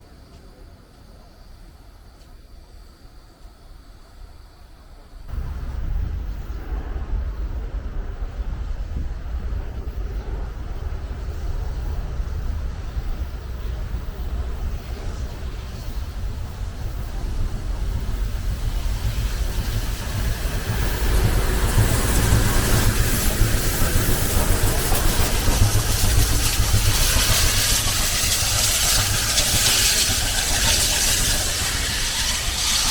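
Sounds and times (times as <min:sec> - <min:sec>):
train rumbling on rails: 0:00.0 - 0:32.9.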